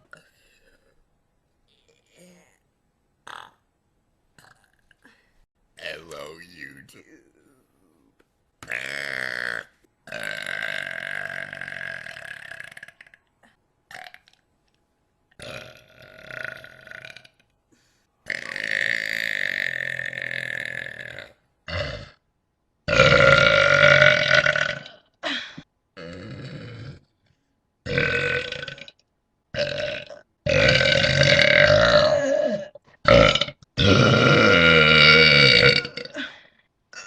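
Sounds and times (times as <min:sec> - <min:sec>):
person belching: 0:08.6 - 0:13.2, 0:15.4 - 0:17.3, 0:18.3 - 0:22.2, 0:22.9 - 0:25.0, 0:26.0 - 0:27.0, 0:27.9 - 0:29.0, 0:29.6 - 0:36.3.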